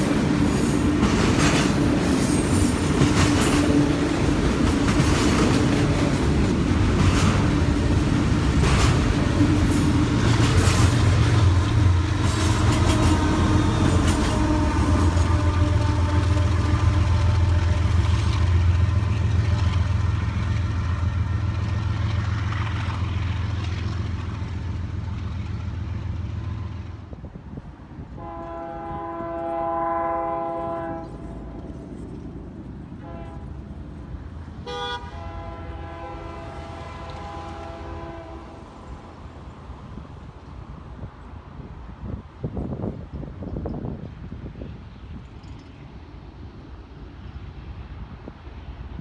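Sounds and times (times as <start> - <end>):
freight train rumbling past: 0.0 - 49.0
locomotive air horn blasts: 11.9 - 18.5, 28.2 - 31.2, 33.0 - 33.6, 34.6 - 38.6.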